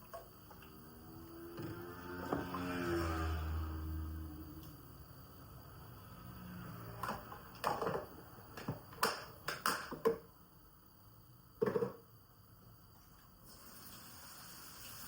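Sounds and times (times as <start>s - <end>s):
kitchen items clicking and knocking: 7.0s - 10.3s, 11.6s - 12.0s.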